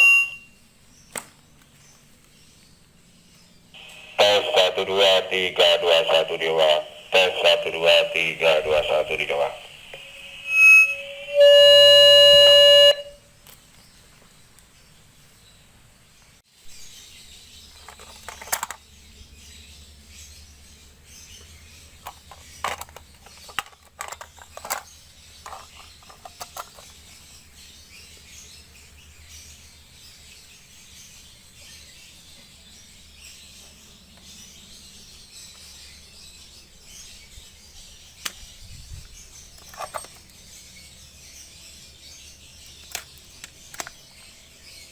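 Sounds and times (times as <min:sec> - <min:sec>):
loud electronic beep: 0:00.0 - 0:00.5, 0:06.9 - 0:13.2
faint steady hiss: 0:03.8 - 0:11.4.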